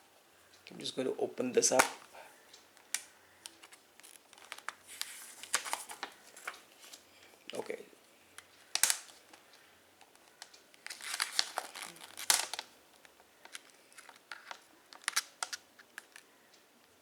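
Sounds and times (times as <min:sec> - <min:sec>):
plastic wrapping crinkling and tearing: 0:02.9 - 0:07.0, 0:08.4 - 0:09.4, 0:10.1 - 0:16.3
small handling clicks: 0:10.0 - 0:16.3.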